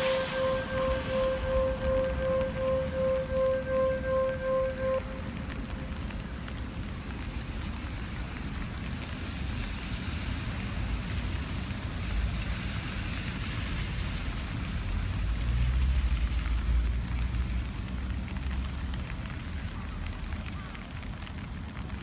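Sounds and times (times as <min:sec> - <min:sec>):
low rumble: 0:00.0 - 0:12.6
steady rain falling: 0:00.0 - 0:22.0.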